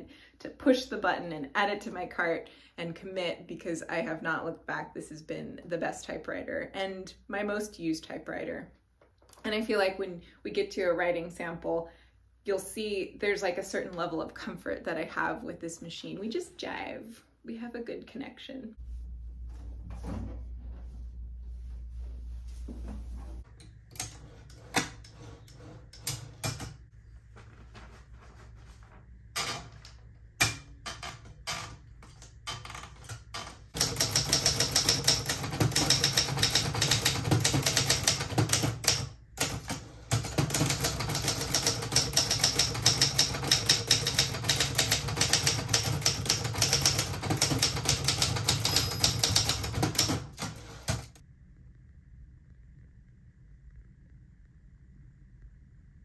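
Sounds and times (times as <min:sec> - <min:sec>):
typewriter clicks and clunks: 0:29.4 - 0:51.2
manual typewriter typing: 0:30.4 - 0:51.2.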